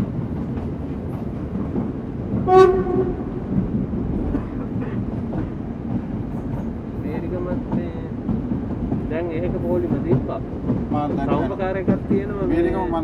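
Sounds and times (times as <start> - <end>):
train rumbling along tracks: 0.0 - 13.0
train horn blast: 2.4 - 3.5.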